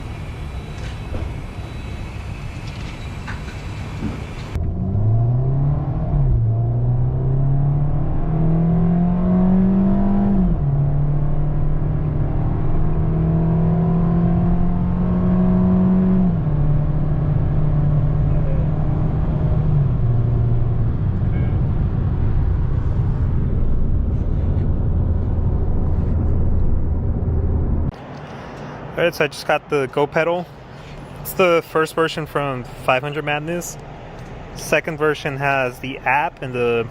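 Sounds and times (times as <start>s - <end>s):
small car engine accelerating: 0.0s - 26.7s.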